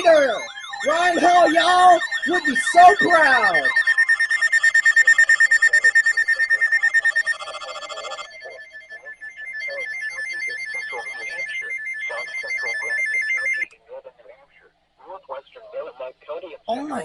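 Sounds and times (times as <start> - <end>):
weather radio trilling alarm: 0.0 - 13.7.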